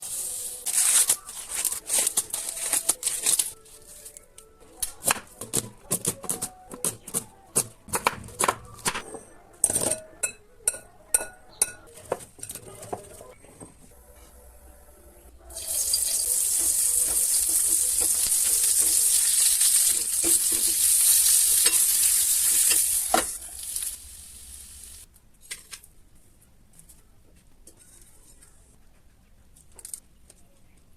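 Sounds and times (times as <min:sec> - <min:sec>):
corn sizzling in hot pan: 0:00.0 - 0:02.7, 0:15.6 - 0:25.1
utensils tapping and clinking: 0:08.8 - 0:13.7, 0:15.8 - 0:21.0, 0:21.6 - 0:23.4.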